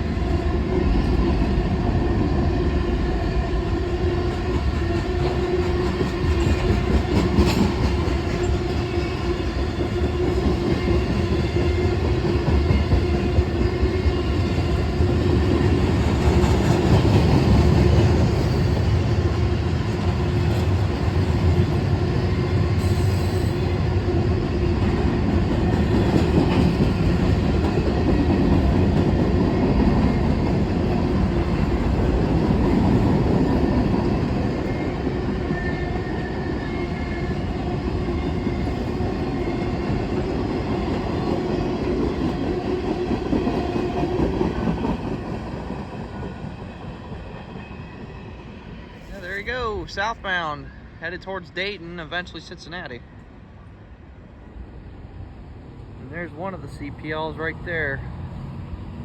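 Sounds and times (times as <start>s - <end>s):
train wheels rumbling on rail: 0.0s - 53.0s
train wheels clacking: 4.2s - 21.6s.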